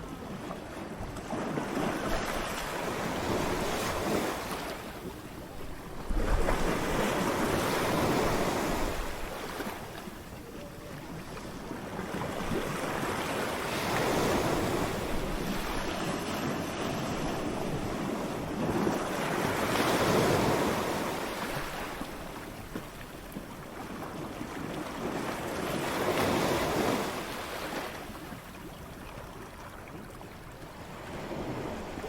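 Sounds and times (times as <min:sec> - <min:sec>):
ocean waves crashing: 0:01.4 - 0:10.3, 0:11.2 - 0:22.2.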